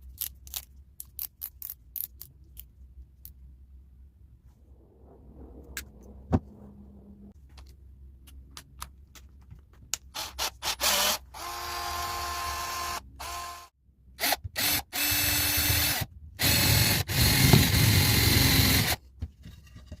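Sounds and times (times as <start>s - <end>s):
drill boring into wood: 10.2s - 19.0s.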